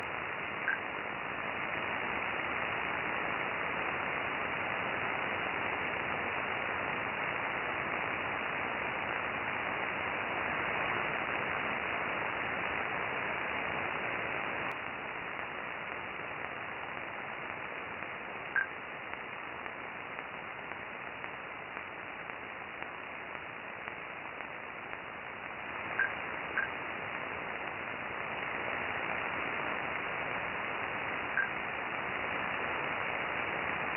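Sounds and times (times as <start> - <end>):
radio receiver static hiss: 0.0 - 33.9.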